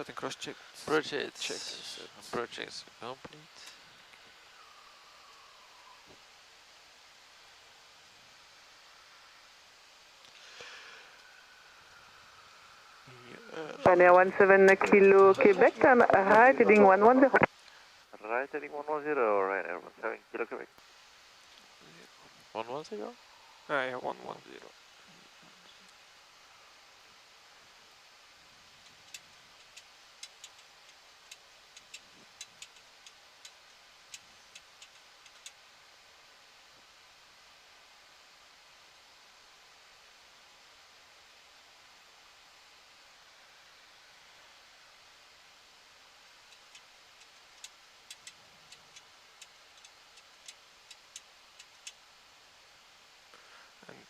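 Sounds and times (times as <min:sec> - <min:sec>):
cockpit background hiss: 0:00.0 - 0:54.0
sharp ticks: 0:28.8 - 0:35.6, 0:46.5 - 0:52.0.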